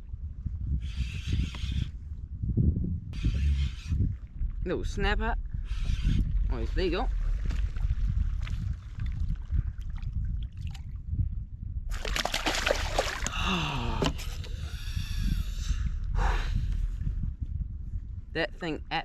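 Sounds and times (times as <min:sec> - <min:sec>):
wind rumble on microphone: 0:00.0 - 0:19.0
fish thrashing and splashing water: 0:11.9 - 0:13.4.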